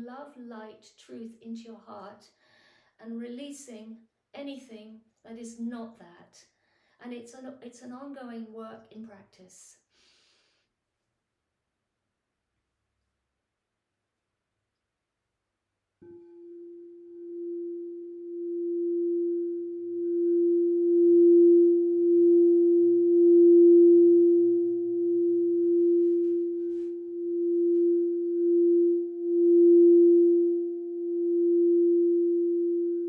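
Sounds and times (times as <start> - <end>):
singing bowl tone: 16.0 - 33.0.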